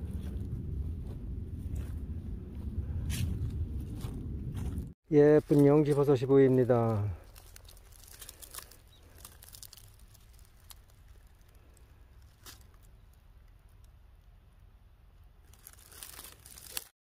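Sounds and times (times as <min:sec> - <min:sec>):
leaves crunching: 0:04.0 - 0:13.2, 0:15.4 - 0:16.9
dry leaves rustling and crackling: 0:05.1 - 0:14.3, 0:15.3 - 0:16.9.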